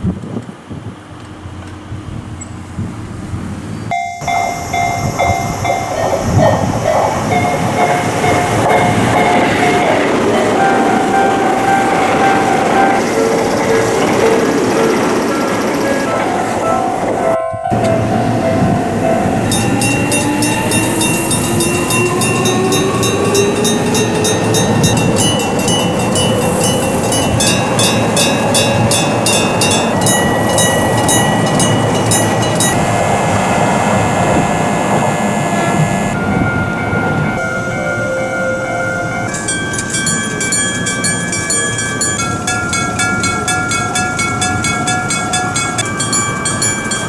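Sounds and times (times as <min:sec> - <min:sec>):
passing train rumble and clatter: 0:00.0 - 0:47.0
railroad crossing alarm ringing: 0:03.8 - 0:47.0.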